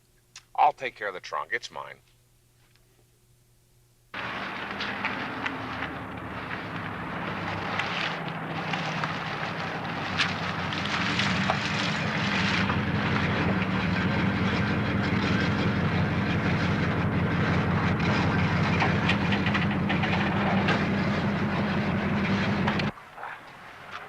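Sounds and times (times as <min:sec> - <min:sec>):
heavy vehicle rumble: 0:04.2 - 0:24.0
rattling: 0:10.2 - 0:22.9.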